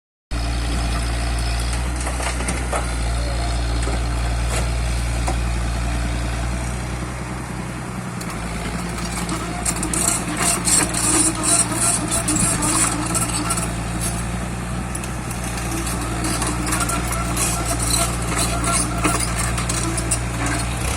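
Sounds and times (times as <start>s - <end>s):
excavator diesel engine running: 0.3s - 20.9s
clattering and scraping: 8.2s - 14.4s, 15.0s - 20.9s.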